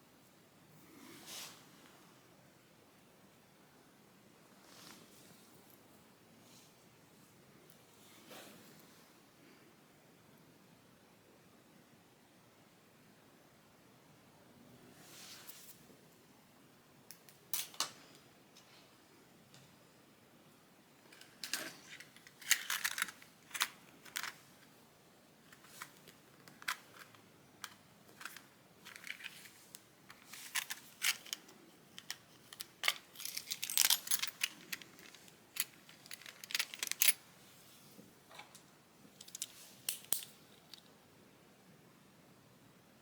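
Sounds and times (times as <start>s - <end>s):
tools scratching and clicking in ear: 25.5s - 37.2s.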